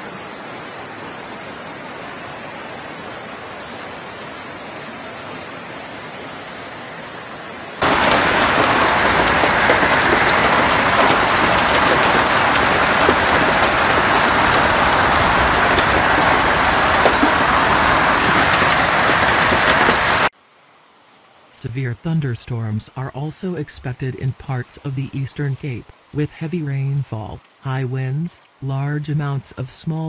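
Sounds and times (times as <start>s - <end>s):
hailstones ticking: 7.8s - 20.3s
heavy rain and hail roaring: 7.8s - 20.3s.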